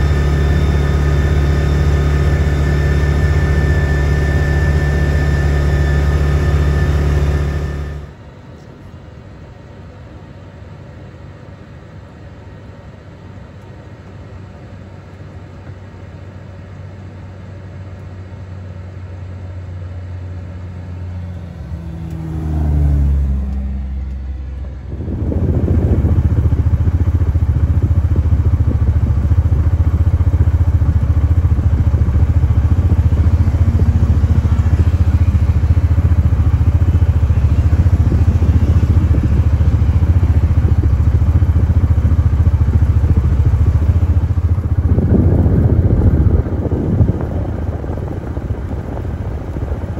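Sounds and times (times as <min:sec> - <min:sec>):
road and wind rush: 0:00.0 - 0:08.3, 0:19.3 - 0:49.9
utility vehicle engine running: 0:00.0 - 0:09.0, 0:14.9 - 0:49.9.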